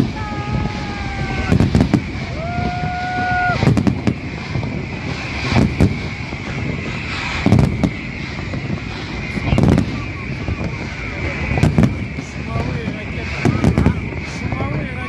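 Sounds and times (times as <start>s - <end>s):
fireworks bursting: 0.0s - 15.0s
crowd hubbub: 8.6s - 15.0s.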